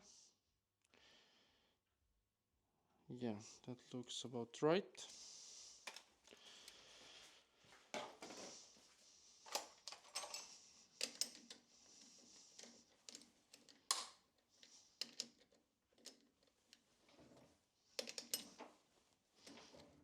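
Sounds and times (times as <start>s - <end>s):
clicks and knocks of tools: 9.5s - 11.6s, 12.5s - 16.8s, 18.0s - 18.7s.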